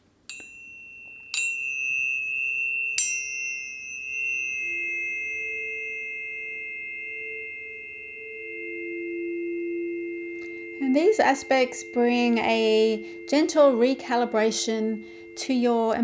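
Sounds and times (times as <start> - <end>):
ringing pure tones: 0.3 - 16.0
tuning forks struck: 0.3 - 16.0.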